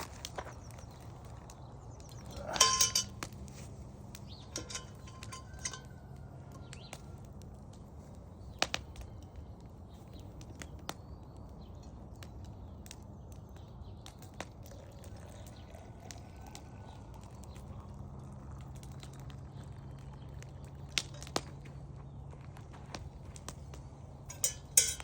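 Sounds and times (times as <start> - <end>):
light metal clinks and taps: 2.4 - 3.7, 4.4 - 6.2, 24.3 - 25.0
pot lid ringing clank: 24.3 - 25.0.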